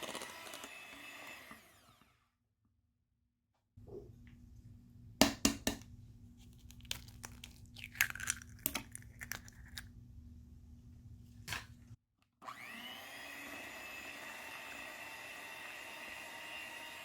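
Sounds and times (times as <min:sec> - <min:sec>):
low steady hum: 0:03.8 - 0:12.0.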